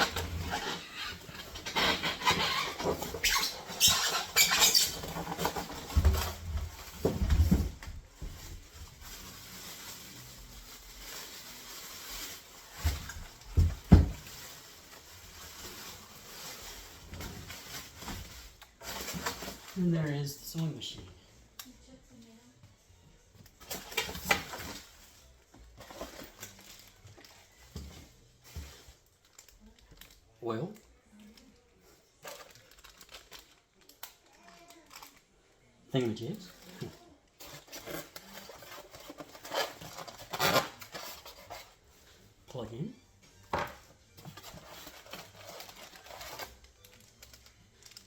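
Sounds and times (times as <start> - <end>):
packaging rustling: 0.0 - 19.9, 32.2 - 35.2, 36.4 - 41.8, 44.2 - 48.0.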